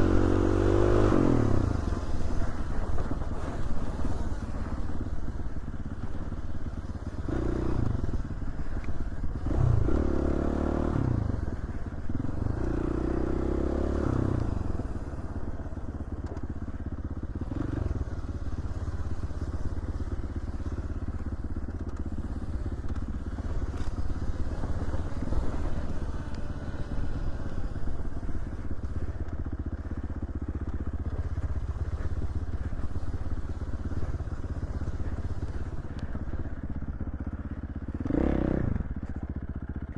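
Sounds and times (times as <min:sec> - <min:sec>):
dirt bike engine revving: 0:00.0 - 0:04.9, 0:07.1 - 0:08.4, 0:09.3 - 0:15.4, 0:17.3 - 0:19.7, 0:22.0 - 0:29.4, 0:37.9 - 0:39.0.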